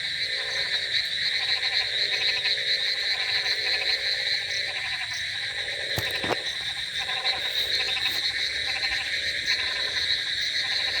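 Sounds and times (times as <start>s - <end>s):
frogs croaking: 0.0s - 11.0s.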